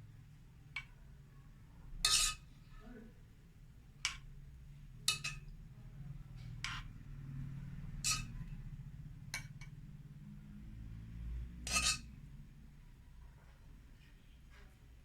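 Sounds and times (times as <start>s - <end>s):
spoon clinking on a dish: 5.0s - 5.5s.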